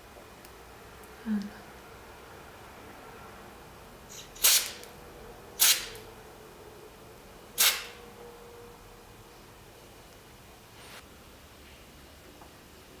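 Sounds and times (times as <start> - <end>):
aerosol spray hiss: 7.6 - 8.0.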